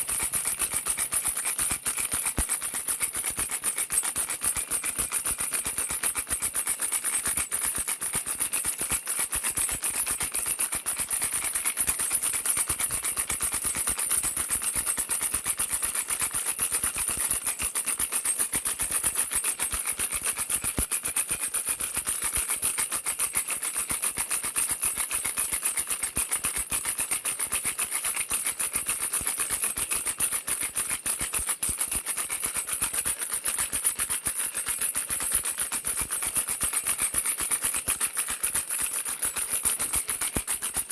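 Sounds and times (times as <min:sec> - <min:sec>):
baby rattle shaking: 0:00.0 - 0:40.9.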